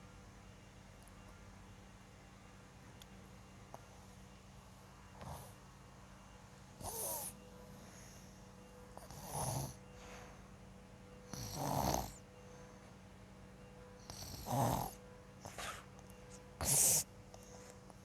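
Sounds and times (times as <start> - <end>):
boy snoring: 6.8 - 7.4, 9.0 - 9.8, 11.3 - 12.2, 14.1 - 15.0, 16.6 - 17.0.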